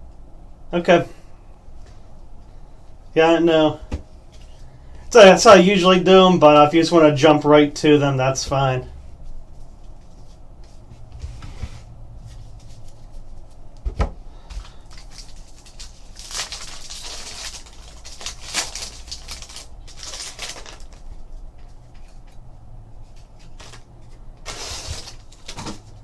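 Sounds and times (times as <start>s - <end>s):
steady low hum: 0.0s - 26.0s
card wrappers tearing: 14.6s - 21.4s, 23.4s - 26.0s.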